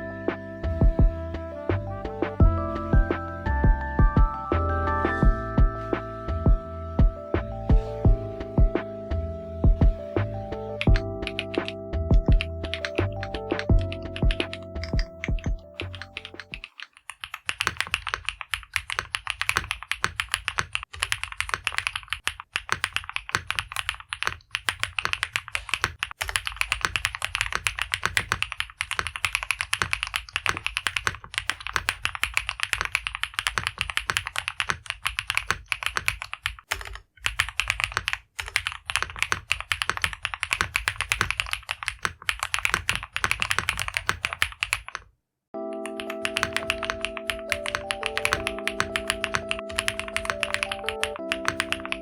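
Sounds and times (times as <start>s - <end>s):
fast mechanical keyboard typing: 10.7s - 45.1s, 45.8s - 52.0s.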